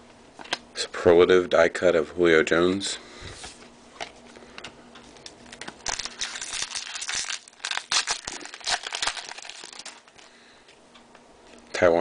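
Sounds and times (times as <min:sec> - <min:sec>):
trading cards crinkling and rustling: 0:03.4 - 0:10.4.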